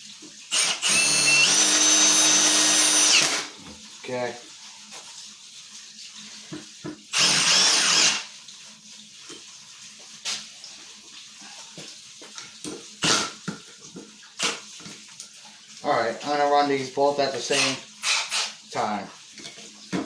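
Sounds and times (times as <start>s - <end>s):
impact driver whirring: 0.5s - 3.5s, 7.1s - 8.3s, 18.0s - 18.6s.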